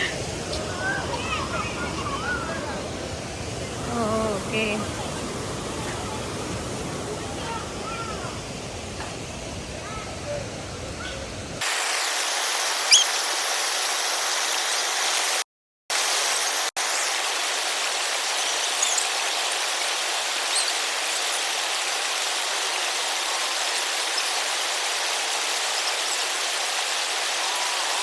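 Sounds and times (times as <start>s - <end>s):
river water rushing: 11.6s - 28.0s.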